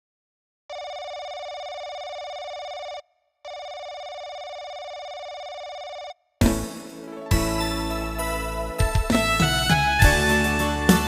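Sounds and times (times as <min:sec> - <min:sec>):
telephone ringing: 0:00.7 - 0:06.2.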